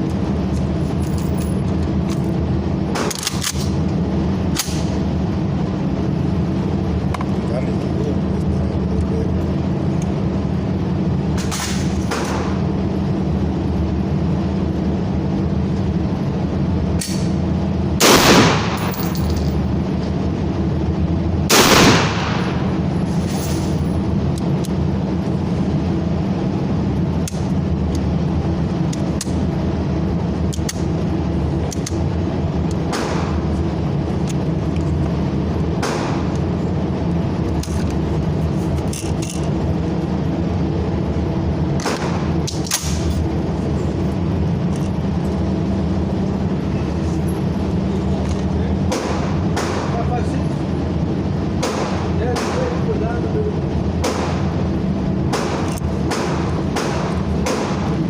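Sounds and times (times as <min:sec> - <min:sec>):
low hum: 0:00.0 - 0:58.0
loud gunshots ringing: 0:18.0 - 0:19.1, 0:21.5 - 0:22.8, 0:55.3 - 0:57.9.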